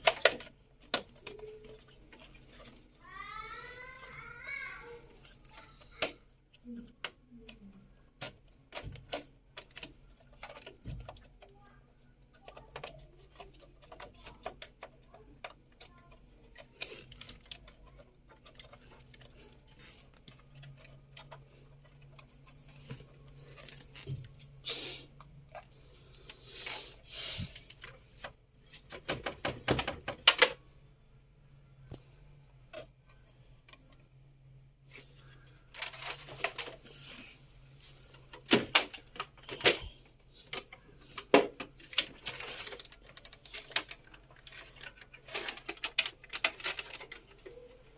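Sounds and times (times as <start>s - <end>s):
computer parts clicking and rattling: 0.0s - 3.0s, 5.0s - 30.6s, 35.3s - 47.9s.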